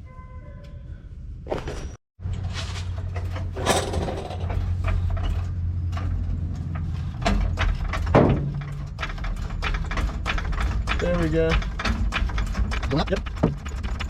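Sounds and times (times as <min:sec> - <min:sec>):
metallic clicks and clanks of tools: 0:03.0 - 0:14.0.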